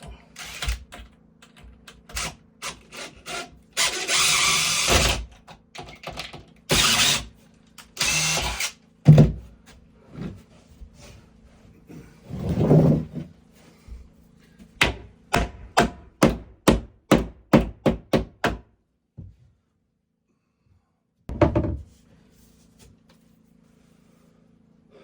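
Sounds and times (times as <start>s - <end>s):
hammer knocking on wood: 9.1s - 9.4s, 14.8s - 19.3s.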